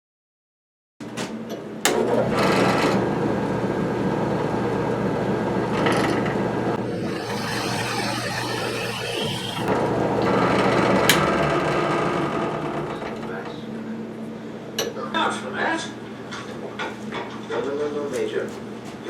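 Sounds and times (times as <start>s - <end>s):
machine humming and rattling: 1.8s - 13.6s.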